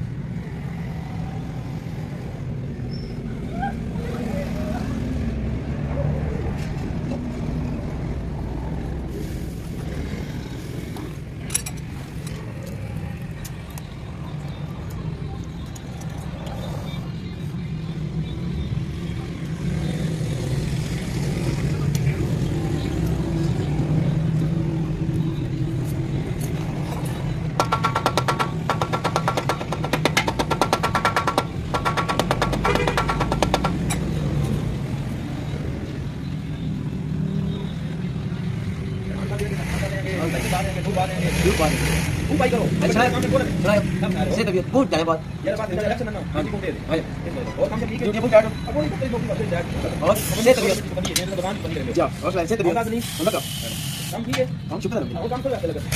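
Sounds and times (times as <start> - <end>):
rapid metallic clicking: 27.5 - 34.1.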